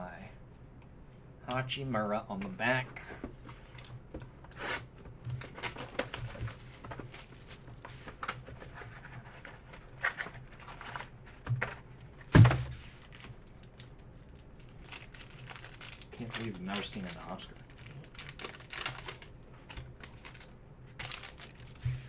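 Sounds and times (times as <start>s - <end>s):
cards and wrappers rustling: 5.4s - 22.0s
thump: 12.4s - 12.8s.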